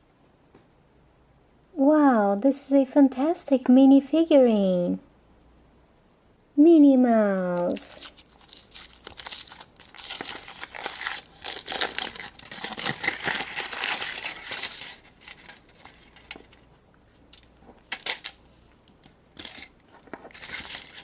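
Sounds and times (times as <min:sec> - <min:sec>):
wrapping crinkling and tearing: 0:07.5 - 0:16.7, 0:17.3 - 0:21.0.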